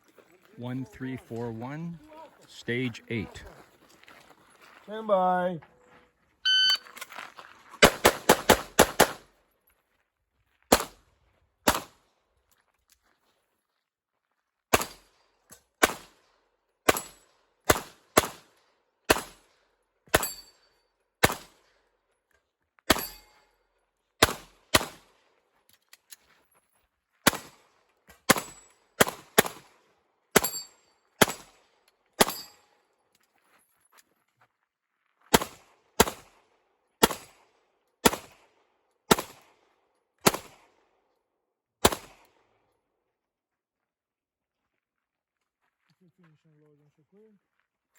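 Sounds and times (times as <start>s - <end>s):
pistol shots: 7.8s - 9.2s, 10.7s - 11.0s, 11.7s - 12.0s, 14.7s - 15.0s, 15.8s - 16.2s, 19.1s - 19.4s, 21.2s - 21.6s, 24.2s - 25.1s, 27.2s - 27.6s, 28.3s - 29.7s, 31.2s - 31.6s, 35.3s - 36.3s, 37.0s - 37.4s, 38.0s - 38.4s, 39.1s - 39.5s, 40.2s - 40.7s, 41.8s - 42.3s.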